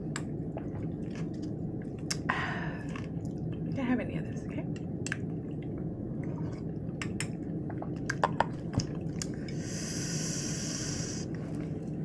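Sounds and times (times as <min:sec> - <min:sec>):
low background hum: 0:00.0 - 0:12.0
soft hiss: 0:09.5 - 0:11.3.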